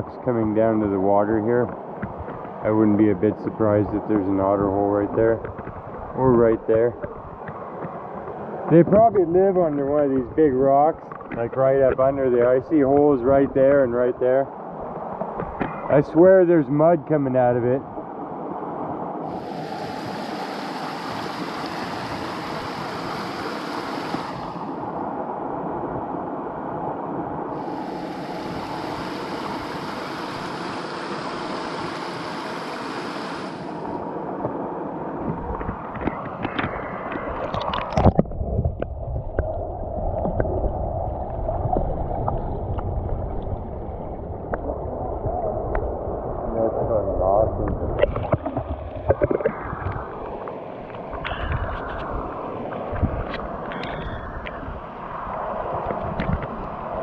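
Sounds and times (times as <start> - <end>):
rush of water: 1.7 - 57.0
creek water gurgling: 19.3 - 24.8
low rumble: 33.5 - 54.9.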